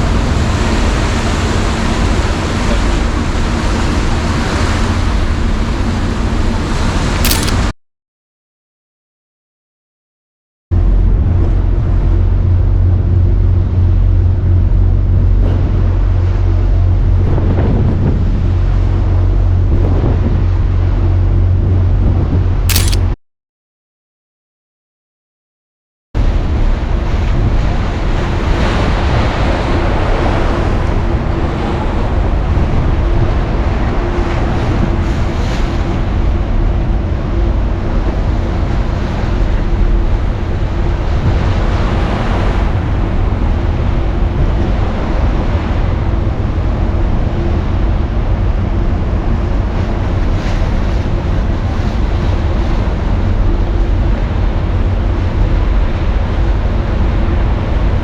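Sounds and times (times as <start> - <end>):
churning seawater: 0.0 - 7.2, 10.8 - 22.7, 26.2 - 58.0
wind buffeting microphone: 10.8 - 22.7.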